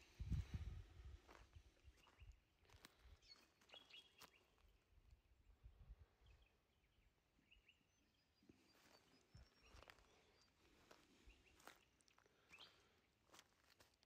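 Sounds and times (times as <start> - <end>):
faint high bird chirps: 1.8 - 4.8, 6.2 - 13.7.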